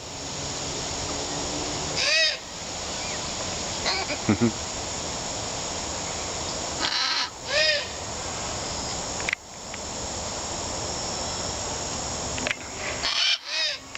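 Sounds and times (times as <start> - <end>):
steady background hiss: 0.0 - 13.9
macaw harsh squawk: 2.0 - 2.4, 6.8 - 8.0, 12.8 - 13.8.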